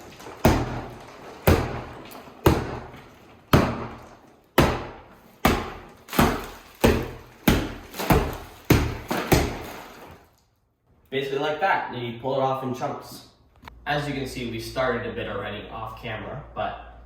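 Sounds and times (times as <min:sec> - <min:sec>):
hammer blows on plaster wall: 0:00.4 - 0:09.8.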